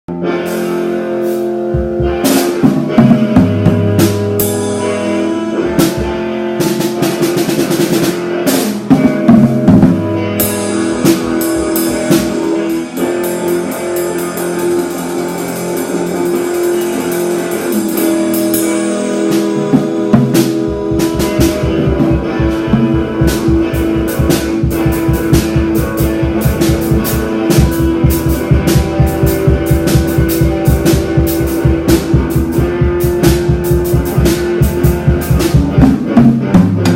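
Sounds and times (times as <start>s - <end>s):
guitar notes: 0.1s - 36.9s
rock drum beat: 0.1s - 36.9s.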